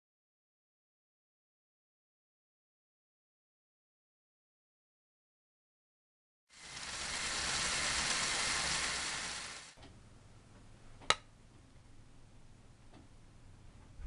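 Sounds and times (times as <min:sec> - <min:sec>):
motor and gears whirring: 0:06.6 - 0:09.8.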